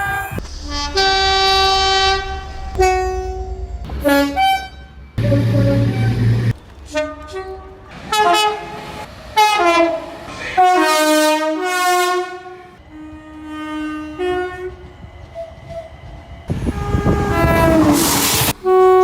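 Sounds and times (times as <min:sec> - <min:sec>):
low rumble: 0:00.0 - 0:06.7
train air horn blasts: 0:00.0 - 0:14.9, 0:16.5 - 0:19.0.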